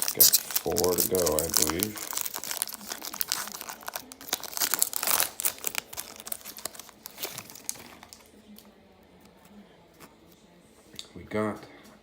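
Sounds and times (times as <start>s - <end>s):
wrapper tearing and crinkling: 0.0s - 8.3s.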